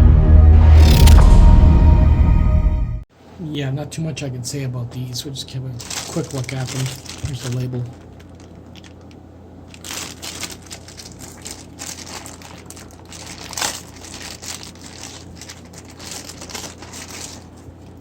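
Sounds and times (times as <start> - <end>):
low steady hum: 0.0 - 18.0
plastic packaging crinkling: 5.7 - 18.0.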